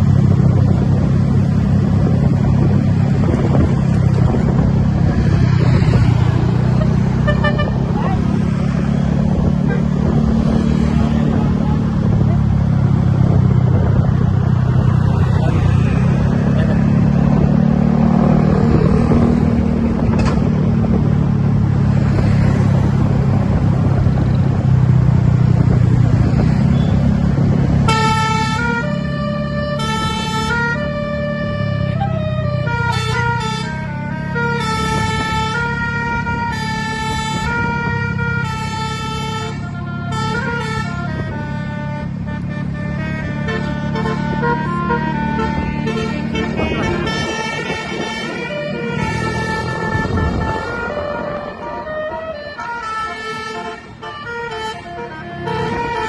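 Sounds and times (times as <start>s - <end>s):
bus engine rumbling: 0.0s - 56.0s
horn playing a melody: 7.2s - 8.0s, 27.8s - 56.0s.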